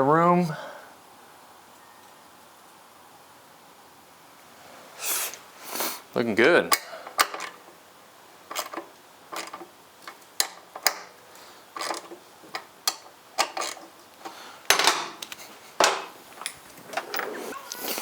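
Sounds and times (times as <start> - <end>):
hand tools and hardware clicking: 6.6 - 7.8, 8.4 - 18.0.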